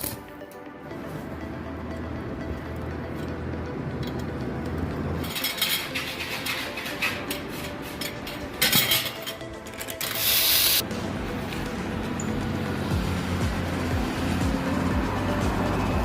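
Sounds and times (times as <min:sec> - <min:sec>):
metal scrape: 0:05.2 - 0:09.4
metal pieces clinking: 0:05.2 - 0:10.8.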